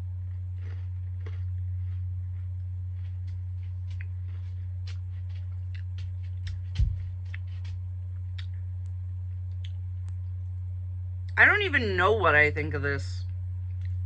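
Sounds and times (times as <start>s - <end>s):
chewing crunchy cookie: 0.0s - 10.4s, 13.6s - 14.0s
steady low hum: 0.0s - 14.0s.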